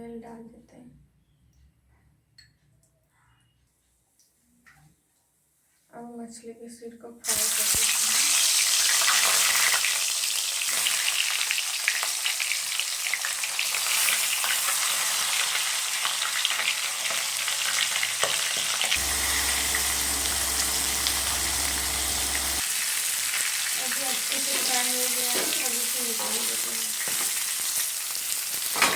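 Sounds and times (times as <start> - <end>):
fish frying in oil: 7.4 - 28.9.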